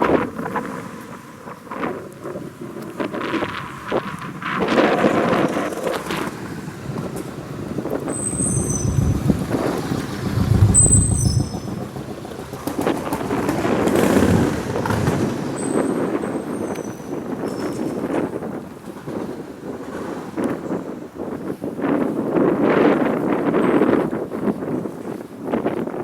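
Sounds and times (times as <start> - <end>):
wind buffeting microphone: 0.0 - 26.0
short high chirps: 10.6 - 11.7.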